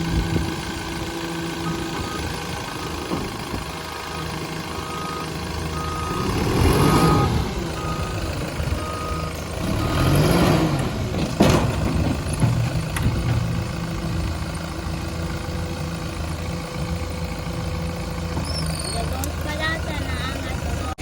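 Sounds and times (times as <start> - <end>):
diesel engine running: 0.0 - 21.0
reversing alarm beeping: 1.6 - 3.0, 4.1 - 10.3.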